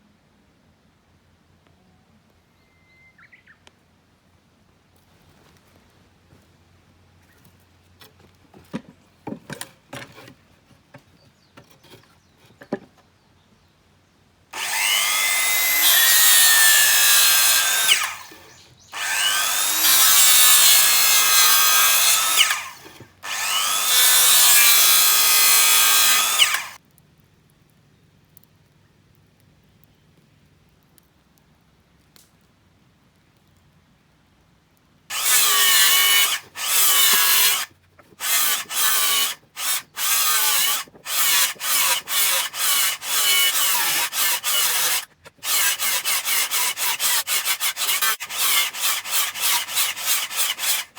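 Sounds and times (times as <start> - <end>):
wood knocking: 8.5 - 10.3
electric saw cutting wood: 14.6 - 26.8, 35.1 - 50.9.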